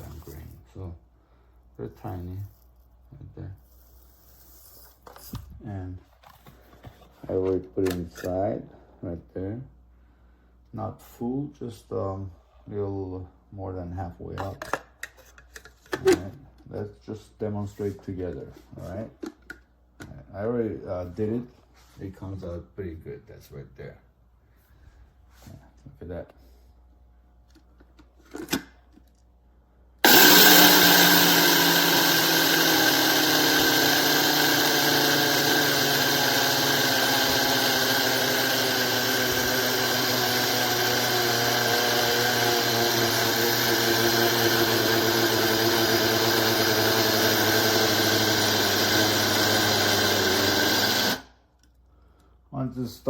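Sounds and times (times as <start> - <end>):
electric grinder grinding seeds: 0.0 - 0.6, 30.0 - 51.4.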